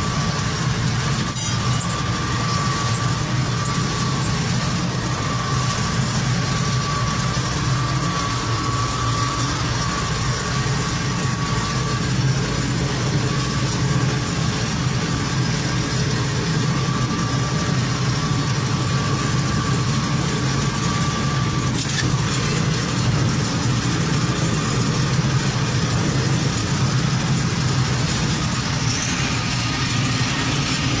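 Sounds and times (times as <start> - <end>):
faint high whine: 0.0 - 31.0
heavy diesel engine running: 0.0 - 31.0.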